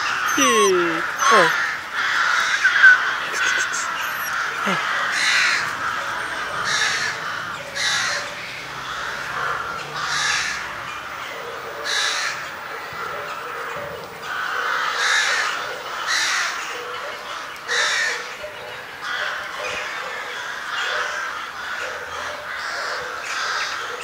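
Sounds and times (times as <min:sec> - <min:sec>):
bird calling: 0:00.0 - 0:07.2.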